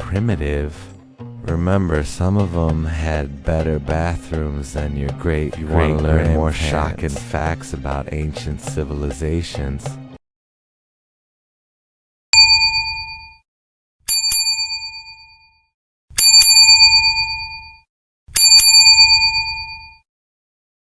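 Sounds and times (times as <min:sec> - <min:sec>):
small bell ringing: 0:12.4 - 0:13.4, 0:14.1 - 0:15.6, 0:16.2 - 0:17.8, 0:18.4 - 0:20.0.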